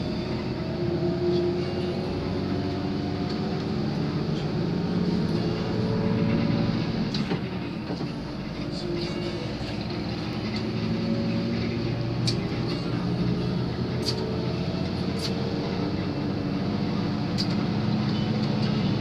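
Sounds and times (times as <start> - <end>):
bus engine drone: 0.0 - 19.0
road noise: 0.0 - 19.0.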